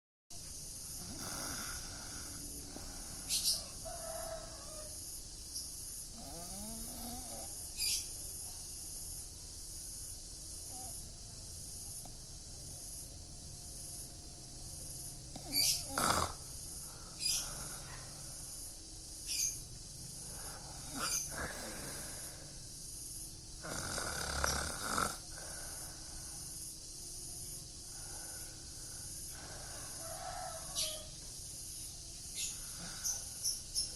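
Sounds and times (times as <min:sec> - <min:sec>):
man snoring: 0:00.8 - 0:03.5, 0:06.1 - 0:07.6, 0:15.3 - 0:17.9, 0:20.3 - 0:22.6, 0:23.6 - 0:26.5, 0:32.5 - 0:33.4.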